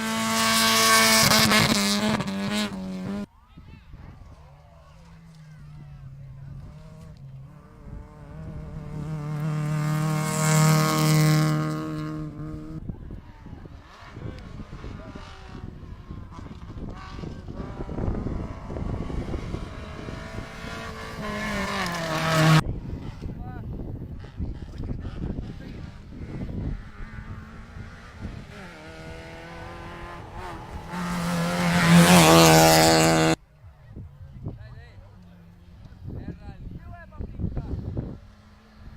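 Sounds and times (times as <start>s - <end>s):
rally car engine passing: 0.0s - 3.3s, 4.2s - 23.4s, 24.0s - 38.9s.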